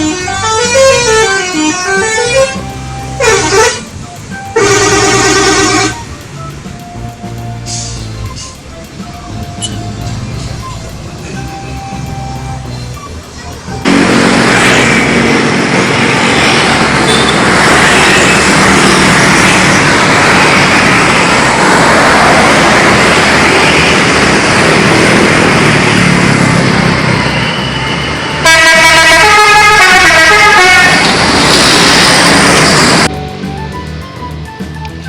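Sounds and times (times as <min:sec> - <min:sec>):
multi-tone musical bus horn: 0:00.0 - 0:12.9, 0:13.7 - 0:15.6, 0:16.3 - 0:19.8, 0:27.2 - 0:32.1
loud steady rush of noise: 0:00.0 - 0:35.0.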